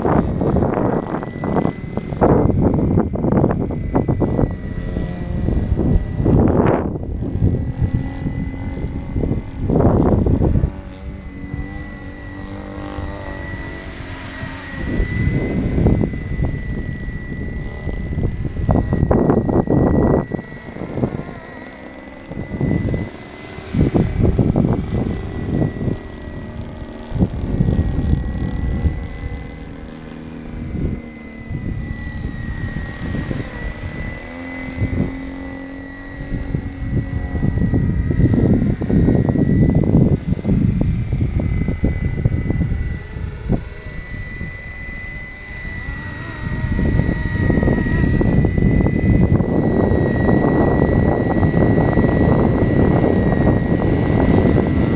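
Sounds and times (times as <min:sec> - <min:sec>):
model helicopter motor whine: 0:00.0 - 0:54.9
wind buffeting microphone: 0:00.0 - 0:54.9.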